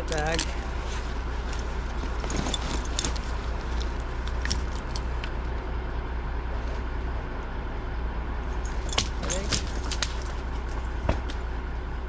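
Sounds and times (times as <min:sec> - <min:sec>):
low engine rumble: 0:00.0 - 0:12.0
light clicks and rustles: 0:00.1 - 0:05.6.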